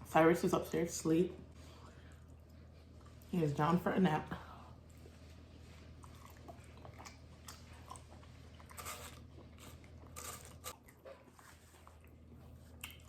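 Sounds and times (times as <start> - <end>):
person chewing food: 4.8 - 13.0
crunchy wet mouth sounds: 12.6 - 13.0.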